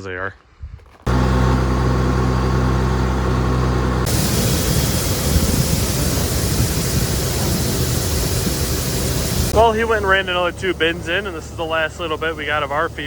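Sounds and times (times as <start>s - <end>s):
diesel engine rumbling: 1.1s - 13.0s
rushing hiss: 4.1s - 13.0s.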